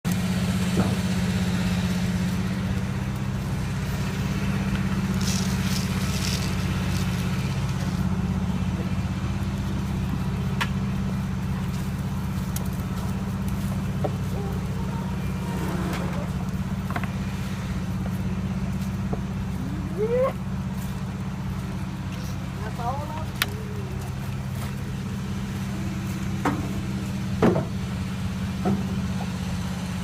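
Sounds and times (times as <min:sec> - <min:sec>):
low droning hum: 0:00.0 - 0:30.0.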